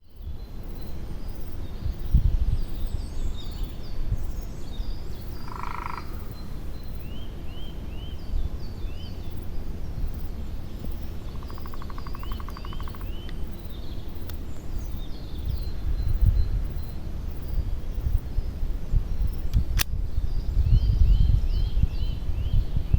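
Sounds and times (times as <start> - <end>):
steady low rumble: 0.3 - 22.9
high chirping calls: 2.0 - 18.5.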